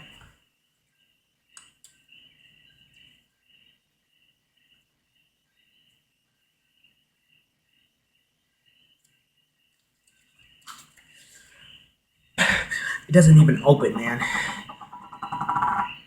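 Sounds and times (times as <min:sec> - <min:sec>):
cricket chirping: 0:02.1 - 0:09.8, 0:11.6 - 0:16.0.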